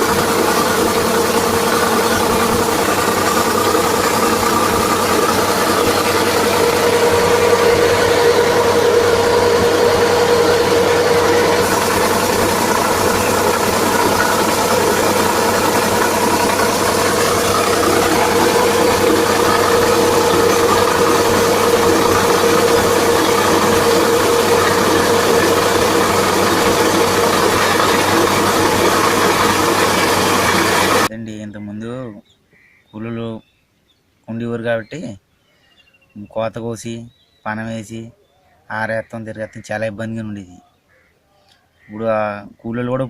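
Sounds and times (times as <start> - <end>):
combine harvester running: 0.0 - 31.1.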